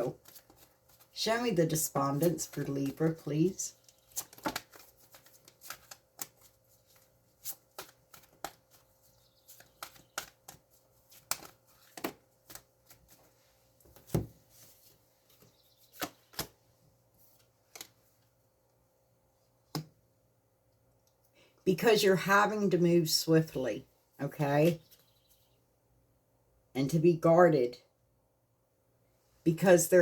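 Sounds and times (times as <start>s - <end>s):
cards being shuffled: 0.0s - 16.6s.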